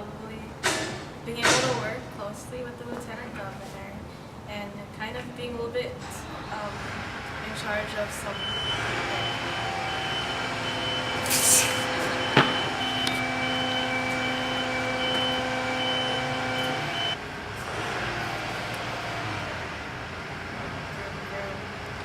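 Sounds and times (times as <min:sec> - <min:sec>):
vehicle engine humming: 0:06.0 - 0:22.0
short hiss: 0:11.2 - 0:11.9.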